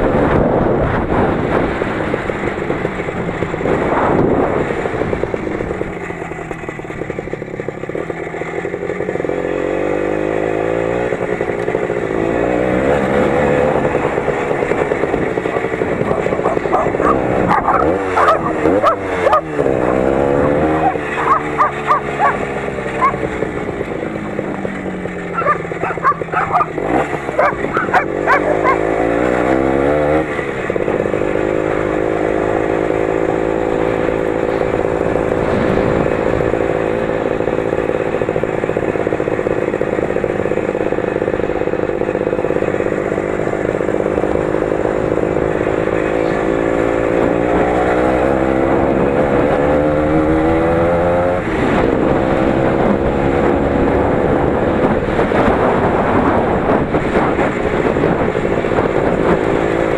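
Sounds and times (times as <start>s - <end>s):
tractor engine running under load: 0.0s - 59.9s.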